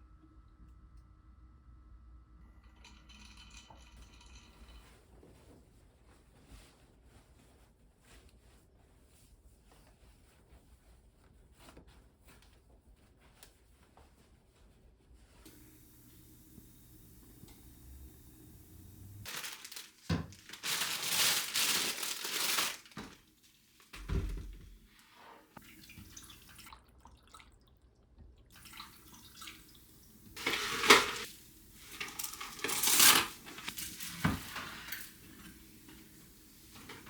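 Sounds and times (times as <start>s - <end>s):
tap water running into sink: 25.6s - 27.5s, 28.5s - 37.0s.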